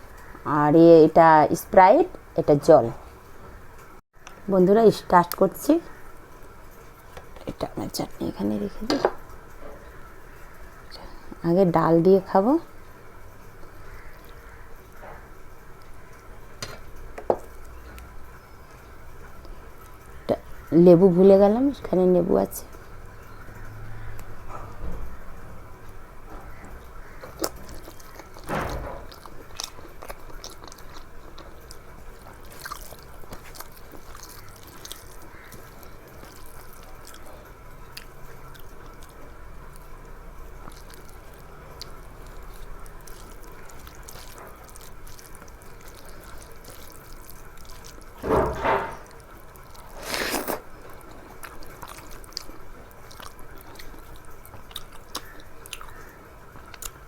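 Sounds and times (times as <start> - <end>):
chewing and mouth smacks: 26.5 - 48.2, 49.1 - 57.0
food crunch: 40.6 - 48.2, 49.1 - 57.0.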